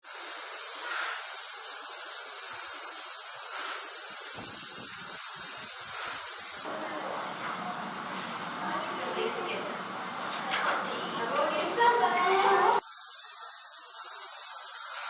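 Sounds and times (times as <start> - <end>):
cicadas buzzing: 0.0 - 6.7, 12.8 - 15.0.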